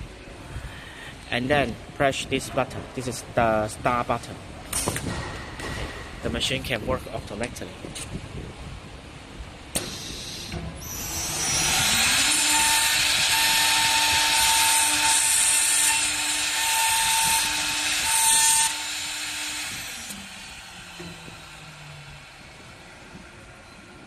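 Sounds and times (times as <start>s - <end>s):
router spindle whining: 9.8s - 24.0s
router milling wood: 9.9s - 22.6s.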